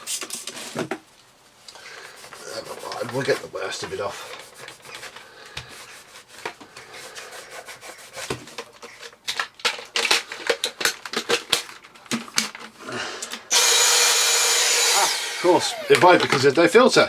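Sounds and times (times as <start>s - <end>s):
cloth wiping plastic: 1.8s - 9.0s
vacuum cleaner motor running: 13.5s - 16.7s.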